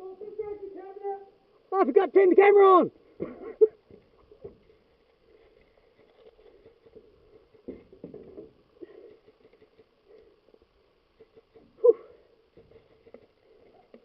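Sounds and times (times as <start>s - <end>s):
rustling: 3.0s - 14.0s.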